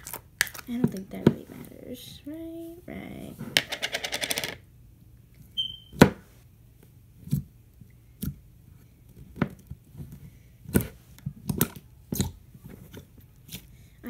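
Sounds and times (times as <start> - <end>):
brief high squeak: 5.6 - 6.0.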